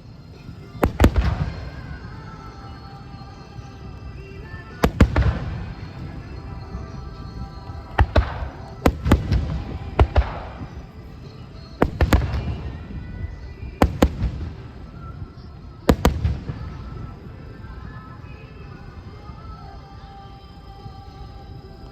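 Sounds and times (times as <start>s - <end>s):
firework crackle: 0.0s - 21.9s
firework bangs: 0.7s - 2.6s, 4.5s - 11.2s, 11.8s - 17.4s.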